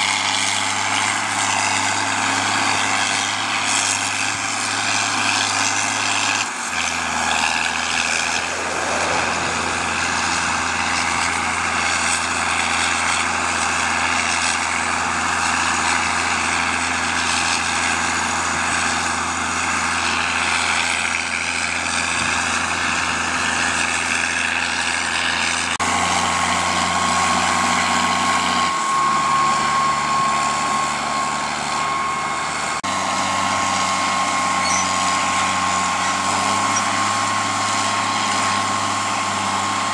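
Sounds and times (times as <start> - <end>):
tractor diesel engine running: 0.0 - 39.9
steady high whine: 6.4 - 14.0.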